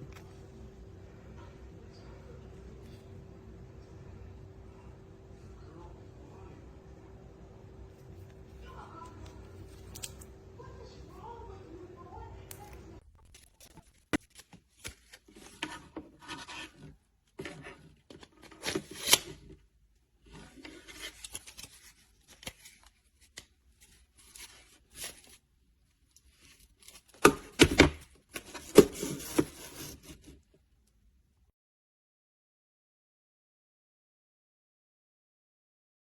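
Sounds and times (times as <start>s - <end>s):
scraping: 12.6s - 19.6s.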